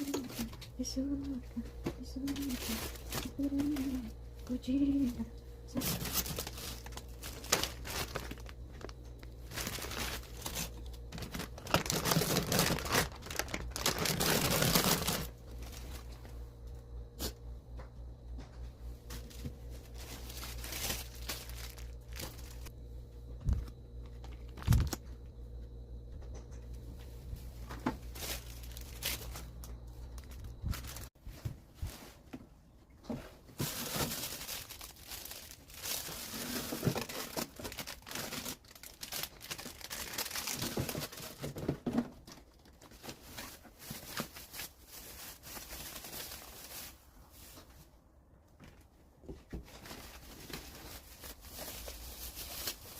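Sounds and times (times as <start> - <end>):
low steady hum: 0.0 - 52.9
packaging crinkling and tearing: 2.2 - 4.1, 5.7 - 16.2, 19.1 - 22.7, 23.6 - 25.1, 28.1 - 31.2, 33.6 - 47.6, 49.7 - 52.9.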